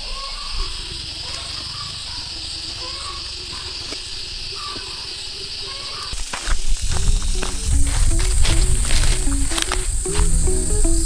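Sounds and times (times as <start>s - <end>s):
steady hiss: 0.0s - 11.0s
background music: 7.3s - 11.0s.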